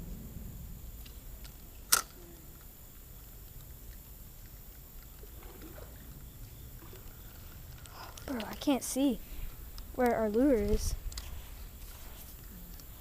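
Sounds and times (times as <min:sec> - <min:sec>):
faint low rumble: 0:00.0 - 0:13.0.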